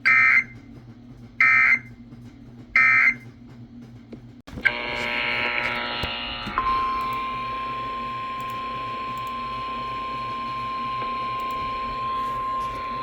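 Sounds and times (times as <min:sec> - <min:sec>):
steady high alarm tone: 0:00.0 - 0:00.5, 0:01.4 - 0:01.9, 0:02.8 - 0:03.2, 0:04.6 - 0:13.0.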